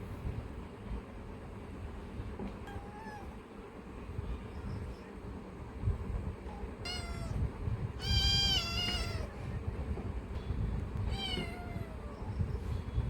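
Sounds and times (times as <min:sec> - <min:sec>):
low steady rumble: 0:00.0 - 0:13.0
cat meowing: 0:02.6 - 0:03.4, 0:06.5 - 0:09.5, 0:11.0 - 0:12.5.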